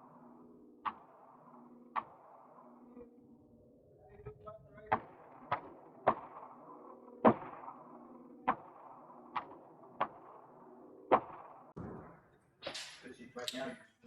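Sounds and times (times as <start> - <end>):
gunshots with short echo: 4.8 - 13.0.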